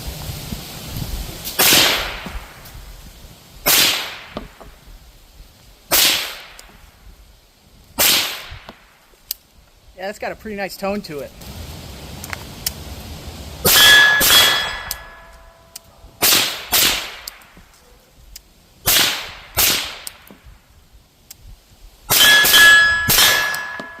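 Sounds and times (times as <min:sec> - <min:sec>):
suppressed rifle shots: 0:03.7 - 0:04.5, 0:05.9 - 0:06.6, 0:08.0 - 0:08.7, 0:16.2 - 0:17.5, 0:18.9 - 0:20.2.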